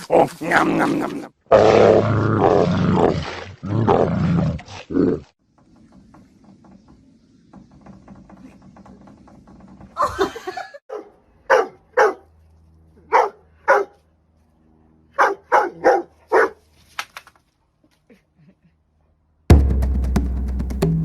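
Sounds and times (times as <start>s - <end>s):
dog barking: 10.9s - 12.3s, 13.1s - 14.0s, 15.2s - 16.6s.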